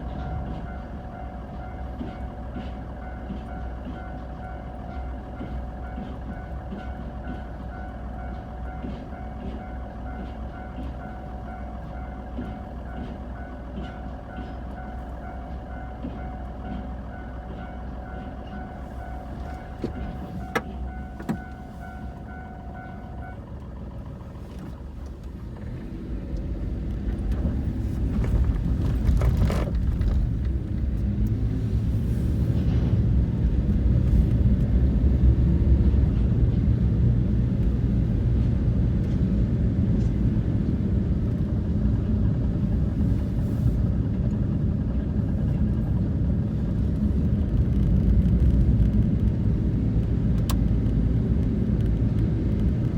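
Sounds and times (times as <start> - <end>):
level crossing warning bell: 0.0 - 24.1
low vehicle engine rumble: 0.0 - 52.9.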